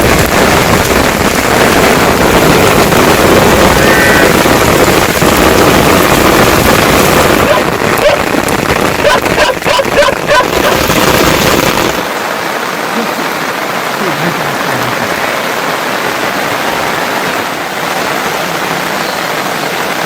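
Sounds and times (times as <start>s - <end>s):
wind buffeting microphone: 0.0s - 12.1s
heavy rain pouring: 0.0s - 20.0s.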